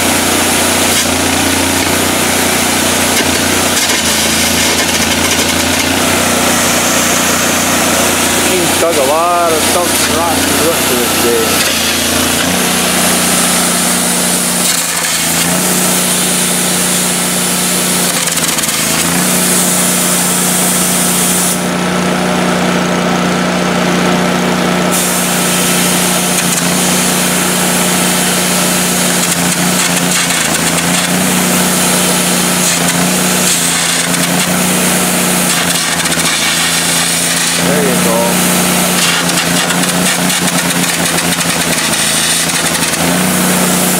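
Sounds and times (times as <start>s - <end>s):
welding arc crackling: 0.0s - 21.9s, 24.9s - 43.9s
welder engine droning: 0.0s - 43.9s.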